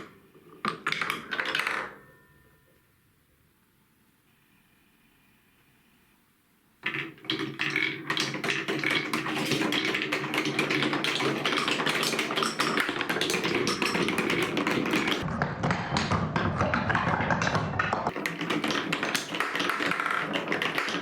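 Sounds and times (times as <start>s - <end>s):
marbles clattering on plastic track: 6.8s - 15.3s, 16.4s - 21.0s.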